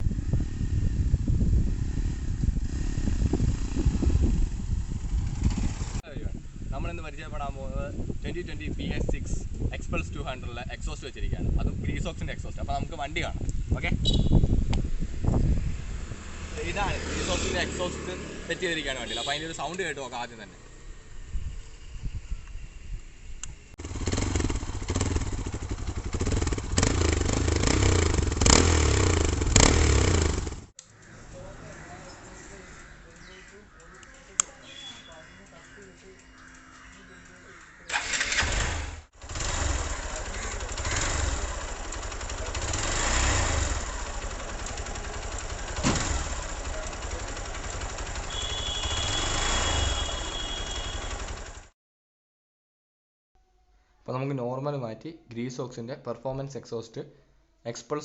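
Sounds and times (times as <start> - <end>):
motorcycle exhaust rumble: 0.0 - 6.0, 11.4 - 16.7, 23.3 - 30.7, 39.1 - 51.6.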